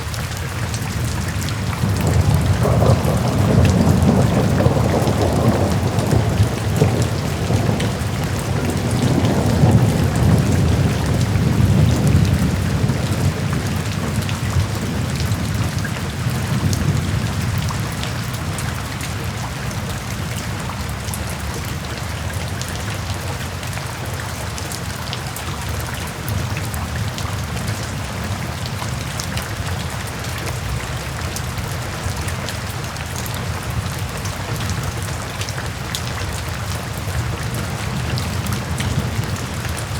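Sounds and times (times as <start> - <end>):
steady rain: 0.0 - 39.9
low rumble of thunder: 0.7 - 22.6, 33.4 - 39.9.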